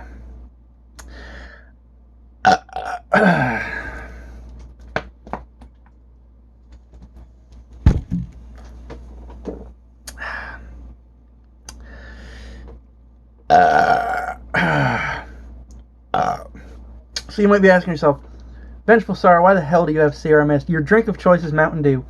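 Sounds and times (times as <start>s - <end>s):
burp: 2.4s - 4.1s, 13.5s - 15.3s, 16.1s - 16.6s
solid thunk: 7.8s - 8.4s.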